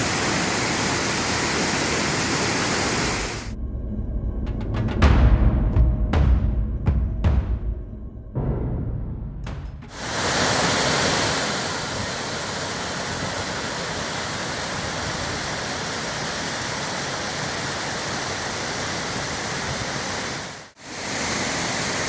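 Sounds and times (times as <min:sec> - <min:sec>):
waterfall thundering: 0:00.0 - 0:03.6, 0:09.5 - 0:22.0.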